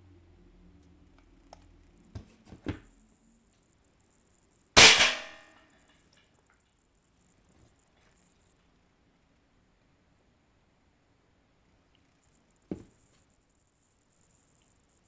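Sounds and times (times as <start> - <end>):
airsoft rifle shot: 4.8 - 5.4.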